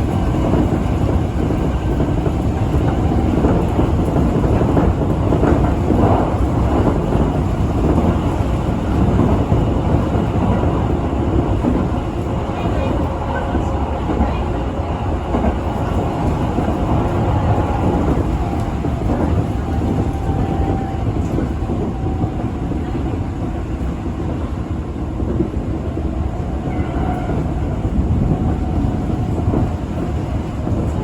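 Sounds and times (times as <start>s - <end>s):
train wheels rumbling: 0.0s - 31.0s.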